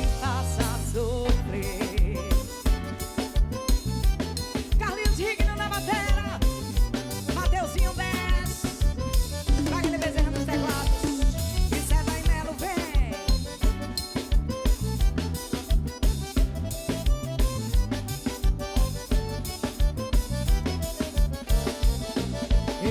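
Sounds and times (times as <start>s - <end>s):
band music: 0.0s - 22.9s
bass: 0.0s - 22.9s
bending lead melody: 0.0s - 22.9s
drum kit beat: 0.0s - 22.9s.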